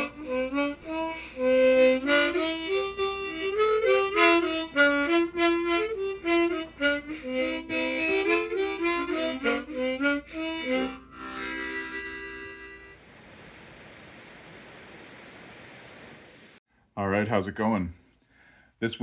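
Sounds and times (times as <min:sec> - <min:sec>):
harmonica dance tune: 0:00.0 - 0:13.0.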